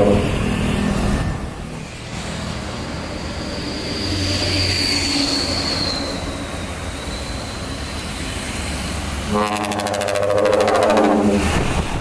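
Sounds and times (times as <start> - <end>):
dump truck rumbling by: 0.0 - 4.5
high squeal: 3.0 - 8.8.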